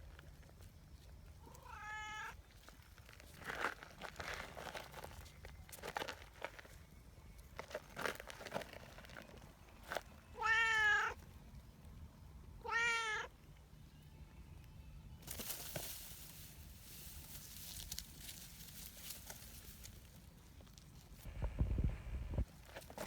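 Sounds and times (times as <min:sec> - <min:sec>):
cat meowing: 0:01.5 - 0:02.4, 0:10.4 - 0:11.2, 0:12.6 - 0:13.3.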